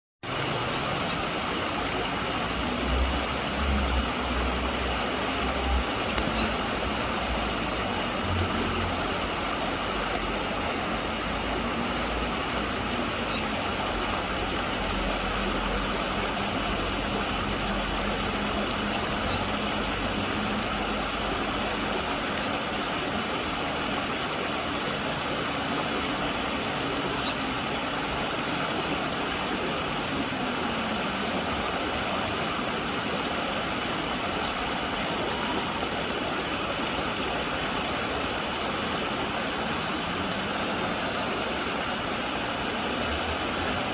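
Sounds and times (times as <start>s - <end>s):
road traffic hum: 0.2s - 43.9s
stream water rushing: 0.2s - 43.9s
vehicle engine drone: 0.3s - 22.1s.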